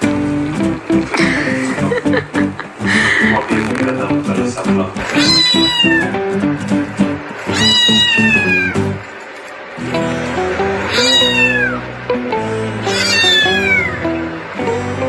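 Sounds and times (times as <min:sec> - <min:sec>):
background music: 0:00.0 - 0:07.8, 0:09.8 - 0:15.0
cat meowing: 0:05.0 - 0:06.3, 0:07.5 - 0:09.0, 0:10.9 - 0:11.9, 0:12.8 - 0:14.1.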